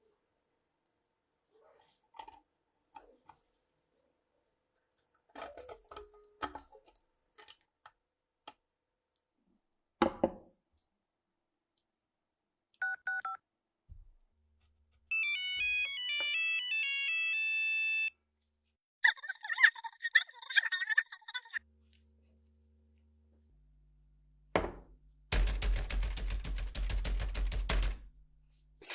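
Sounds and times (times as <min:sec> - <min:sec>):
electronic ringtone melody: 0:15.1 - 0:18.1.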